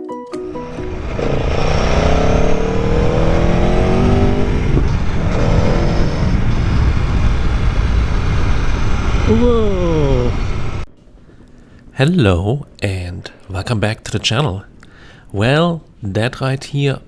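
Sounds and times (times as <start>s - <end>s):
motorcycle engine accelerating: 0.4s - 10.9s
wind and road noise: 0.5s - 12.0s.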